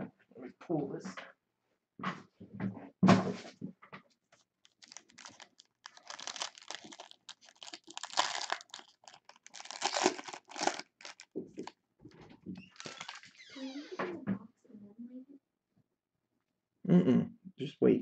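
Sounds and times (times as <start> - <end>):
packaging crinkling and tearing: 4.4 - 11.7, 12.7 - 13.4.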